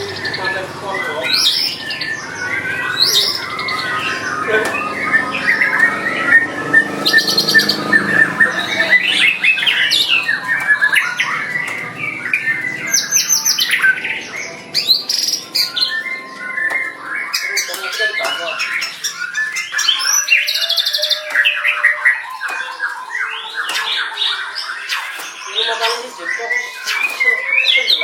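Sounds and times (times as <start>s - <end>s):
bird singing varied song: 0.0s - 28.0s.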